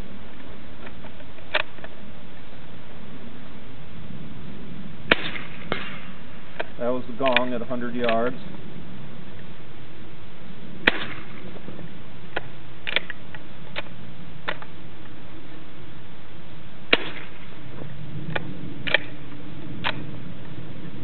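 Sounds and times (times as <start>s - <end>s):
suppressed rifle shots: 5.0s - 8.3s, 10.8s - 11.5s, 16.9s - 17.5s.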